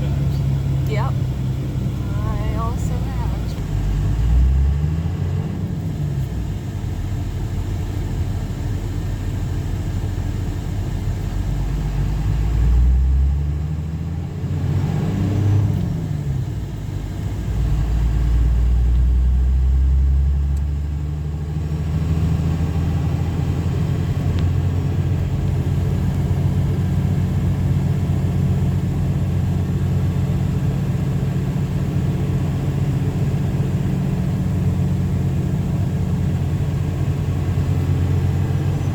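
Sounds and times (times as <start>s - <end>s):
loud low rumble: 0.0s - 7.1s
car engine and road rumble: 0.0s - 38.9s.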